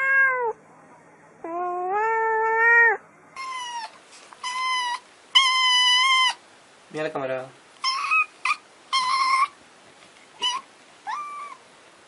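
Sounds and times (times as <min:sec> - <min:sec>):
cat meowing: 0:00.0 - 0:00.6, 0:01.4 - 0:06.4, 0:10.4 - 0:11.6.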